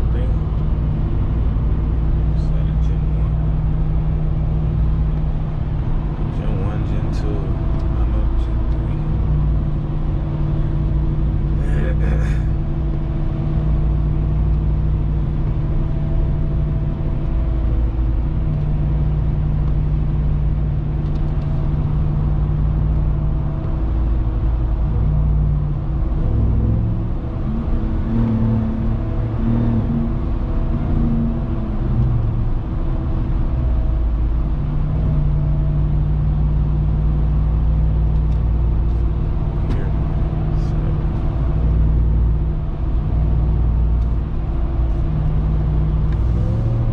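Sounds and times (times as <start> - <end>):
road noise: 0.0 - 46.9
truck engine droning: 0.0 - 46.9.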